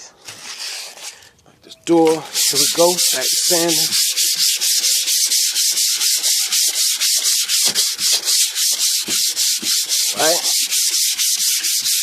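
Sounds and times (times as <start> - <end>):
sandpaper rubbing painted metal: 2.0 - 12.0.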